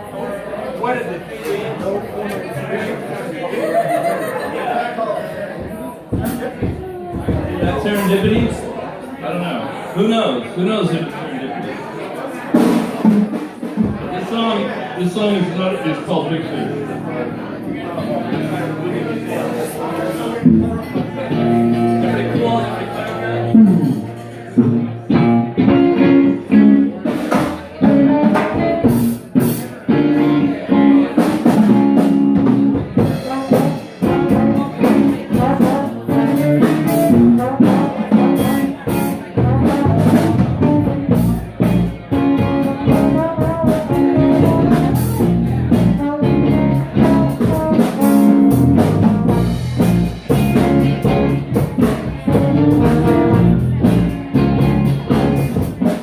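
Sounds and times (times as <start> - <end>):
drum kit beat: 5.6 - 8.7, 12.6 - 14.3, 23.2 - 56.0
live band playing: 5.6 - 8.8, 12.4 - 56.0.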